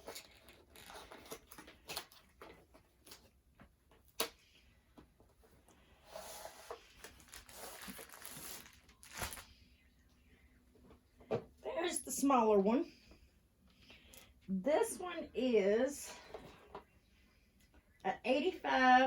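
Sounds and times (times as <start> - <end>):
cardboard rustling and sliding: 6.0 - 9.4.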